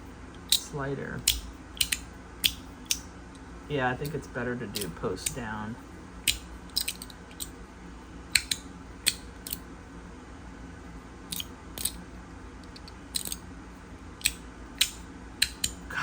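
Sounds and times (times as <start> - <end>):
magnetic slider clicking: 1.3 - 3.0.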